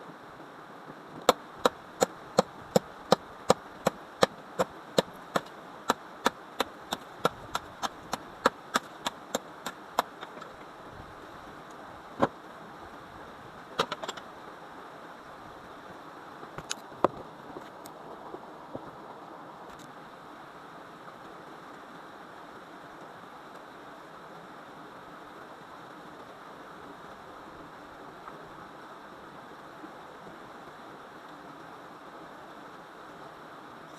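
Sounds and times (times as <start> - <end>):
wood chopping strikes: 1.2 - 6.0, 6.6 - 10.4.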